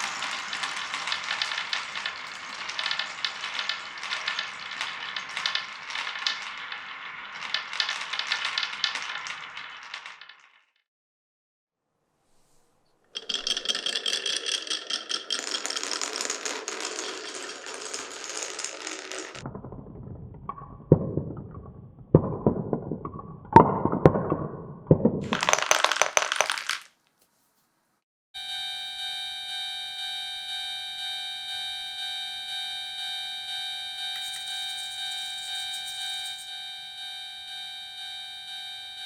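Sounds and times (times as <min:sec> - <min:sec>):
marbles clacking: 0:00.0 - 0:10.8, 0:13.2 - 0:24.4, 0:25.2 - 0:27.0, 0:34.0 - 0:36.5
marbles clattering down a track: 0:00.0 - 0:10.8, 0:13.2 - 0:24.3, 0:25.2 - 0:27.0, 0:34.0 - 0:36.5
marbles rolling rumble: 0:00.0 - 0:10.8, 0:13.2 - 0:27.0, 0:34.0 - 0:36.4.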